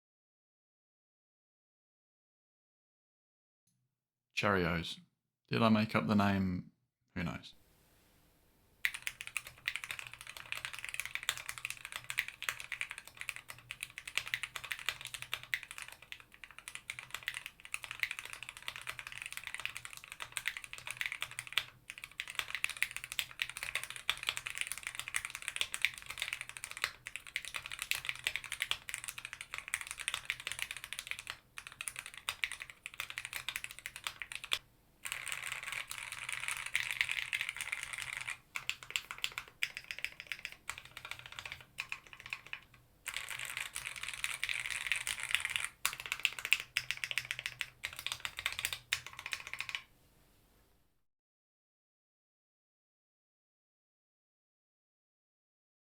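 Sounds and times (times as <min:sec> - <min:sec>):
fast mechanical keyboard typing: 0:08.8 - 0:49.9.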